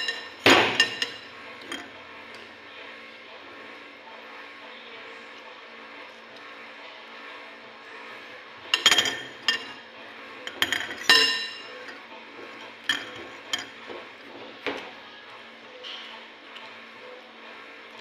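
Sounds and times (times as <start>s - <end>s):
utensils clinking on glass: 0.0s - 1.9s, 8.7s - 9.8s, 10.5s - 12.0s, 12.6s - 13.8s
steady background hum: 0.0s - 18.0s.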